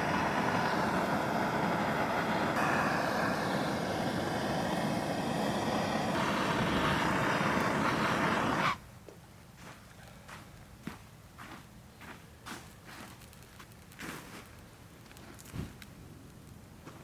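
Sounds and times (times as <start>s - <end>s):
leaf blower running: 0.0s - 8.8s.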